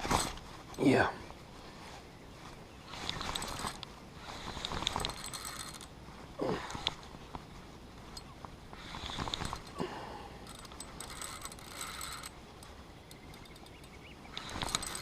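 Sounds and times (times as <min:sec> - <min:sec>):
fishing reel gears whirring: 0:04.6 - 0:05.9, 0:10.4 - 0:15.0
reel handling clicks: 0:10.4 - 0:15.0.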